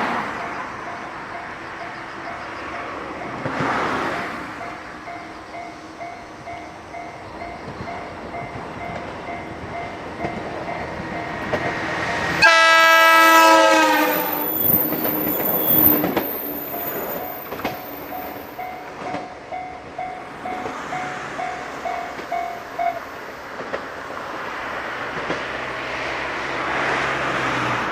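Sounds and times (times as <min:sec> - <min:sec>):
train horn: 0:12.4 - 0:17.8
level crossing alarm ringing: 0:12.4 - 0:23.0
train wheels clattering over rail joints: 0:14.5 - 0:19.3.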